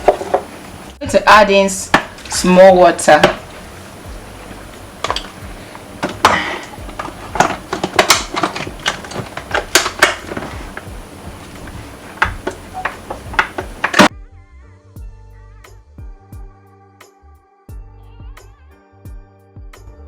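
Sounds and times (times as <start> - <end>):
containers and utensils clicking: 0.0 - 1.0, 1.8 - 14.1.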